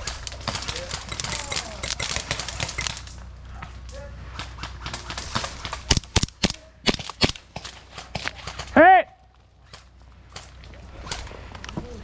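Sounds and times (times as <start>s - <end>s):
airsoft guns firing: 0.0s - 3.1s, 4.3s - 8.8s.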